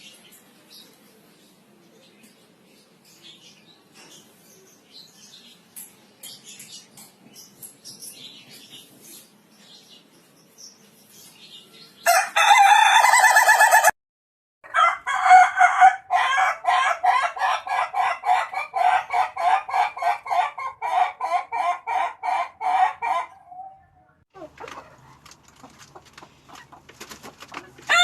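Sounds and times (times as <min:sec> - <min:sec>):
rooster crowing: 0:12.0 - 0:13.9, 0:14.6 - 0:23.6.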